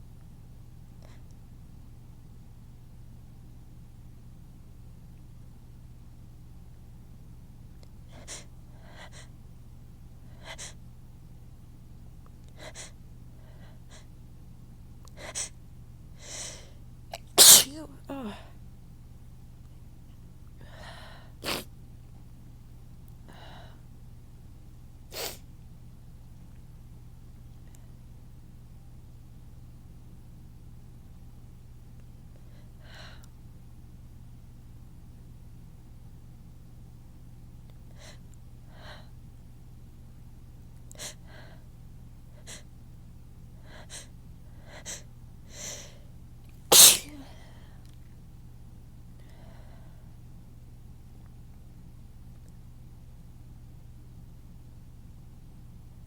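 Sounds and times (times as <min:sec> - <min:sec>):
woman sneezing: 0:17.2 - 0:18.4, 0:21.4 - 0:21.6, 0:25.2 - 0:25.4, 0:46.7 - 0:47.4
gasping intake of breath: 0:46.7 - 0:47.2.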